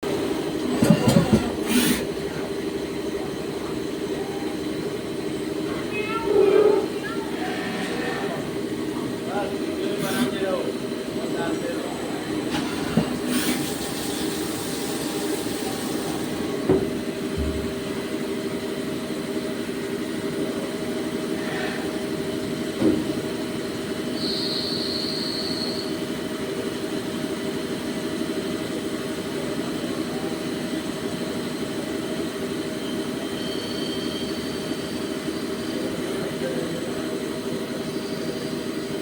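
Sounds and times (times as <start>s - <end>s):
lathe mechanical hum: 0.0s - 39.0s.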